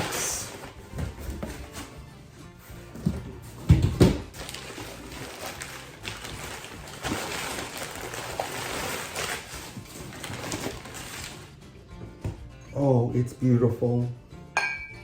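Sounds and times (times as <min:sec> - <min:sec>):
packing rustling and crinkling: 0:04.3 - 0:11.6.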